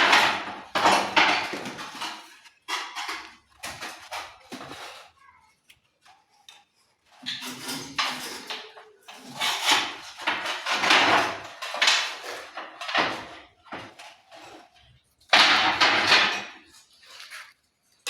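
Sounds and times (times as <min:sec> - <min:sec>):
metal trowel scraping mortar: 0:07.1 - 0:12.9, 0:16.4 - 0:18.0.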